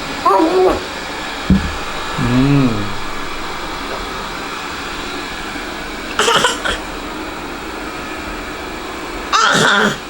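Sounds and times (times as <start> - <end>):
fan-like whooshing: 0.8 - 7.2.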